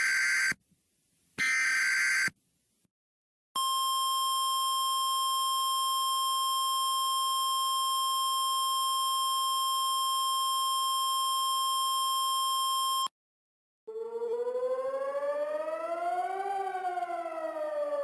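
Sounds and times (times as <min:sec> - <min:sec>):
steady electronic alarm tone: 0:13.9 - 0:18.0.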